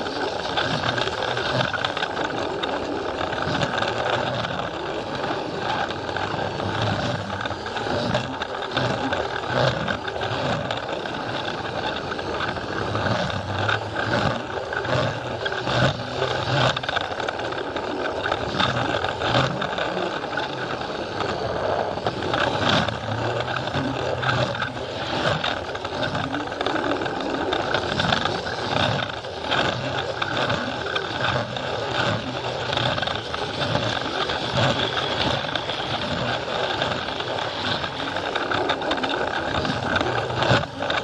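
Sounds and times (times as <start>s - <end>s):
toy train motor whirring: 0.0s - 41.0s
wheels clicking and rattling on track: 0.0s - 41.0s.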